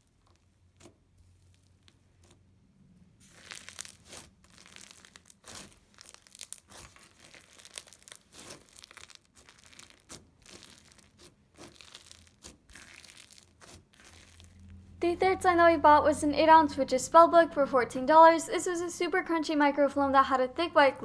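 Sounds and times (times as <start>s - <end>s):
slime crackling and crunching: 0.0s - 2.4s, 3.2s - 14.9s.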